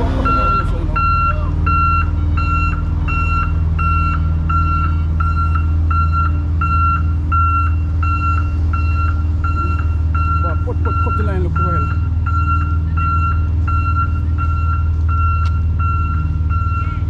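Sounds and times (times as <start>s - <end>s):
engine droning: 0.0s - 17.0s
reversing alarm beeping: 0.0s - 17.0s.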